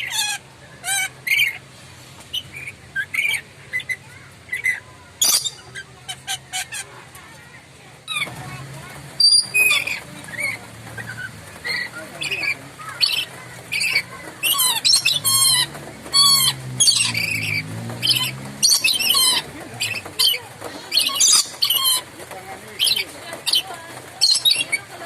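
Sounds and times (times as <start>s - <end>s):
parrot screeching: 5.2s - 5.6s.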